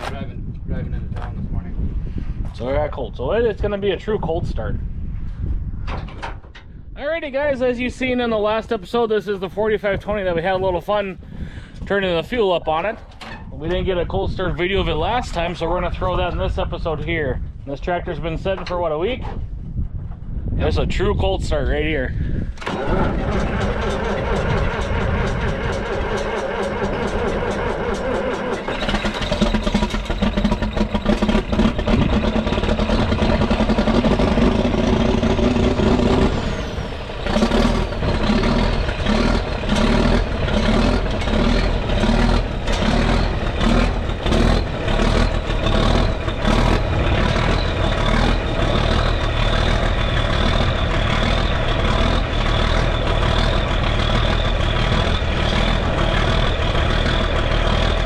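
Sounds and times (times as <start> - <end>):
diesel engine idling: 22.3 - 58.0
starter motor cranking: 22.6 - 58.0.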